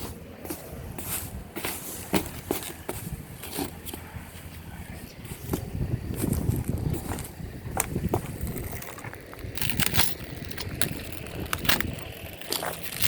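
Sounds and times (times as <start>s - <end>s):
low rumble: 4.0s - 13.0s
packaging crinkling and rustling: 8.2s - 13.0s
scattered clicks: 8.2s - 13.0s.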